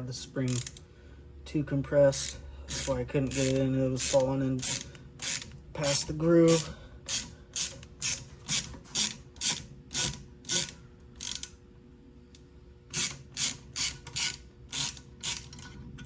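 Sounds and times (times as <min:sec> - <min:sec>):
ratchet clicking: 0:00.5 - 0:00.8, 0:02.1 - 0:11.5, 0:12.9 - 0:15.7.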